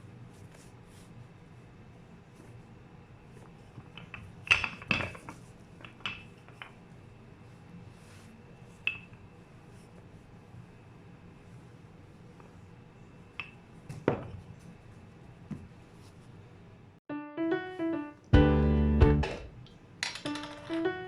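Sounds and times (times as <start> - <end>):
kitchenware clinking: 20.0 - 21.0.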